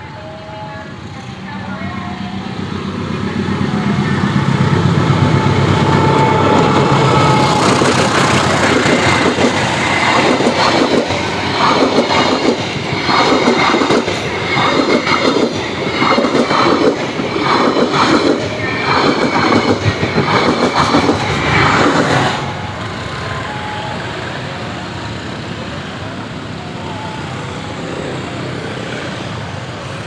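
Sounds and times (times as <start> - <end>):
train wheels clattering over rails: 3.9 - 23.2.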